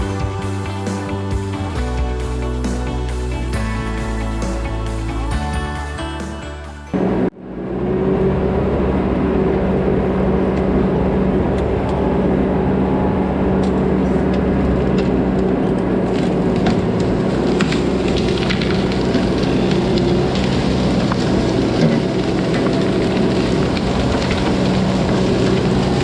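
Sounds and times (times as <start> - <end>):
music: 0.0 - 7.3
brush cracking and snapping: 13.6 - 26.0.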